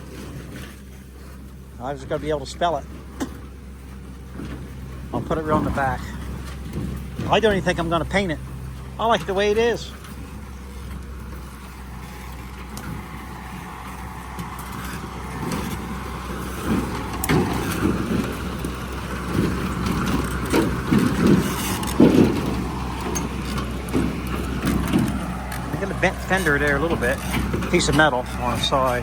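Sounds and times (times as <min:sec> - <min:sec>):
engine knocks and rattles: 0:00.0 - 0:29.0
engine running: 0:00.0 - 0:29.0.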